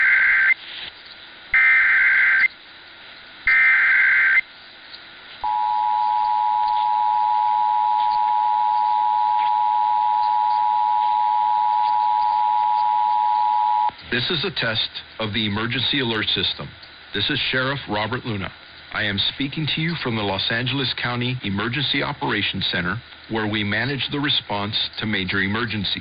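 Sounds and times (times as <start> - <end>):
two-tone attention signal: 5.4 - 13.9.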